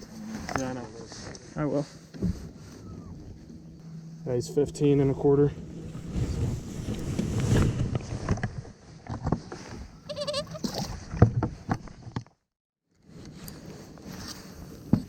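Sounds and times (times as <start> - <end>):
wavering high call: 2.5 - 6.1.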